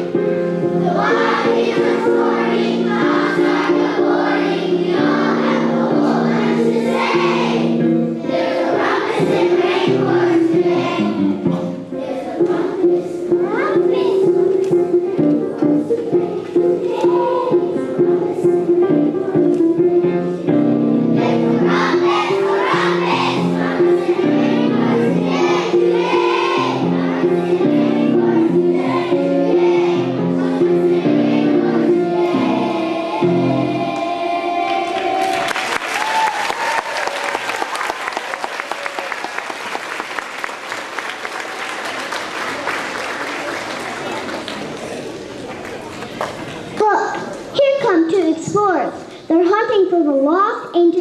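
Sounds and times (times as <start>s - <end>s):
children singing with music: 0.0s - 36.0s
audience applauding: 34.7s - 46.8s.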